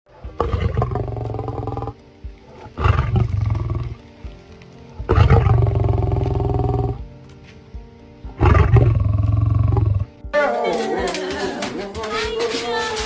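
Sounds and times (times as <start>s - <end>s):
background music: 0.1s - 13.0s
large animal roaring: 0.3s - 4.0s, 5.1s - 7.0s, 8.4s - 11.2s.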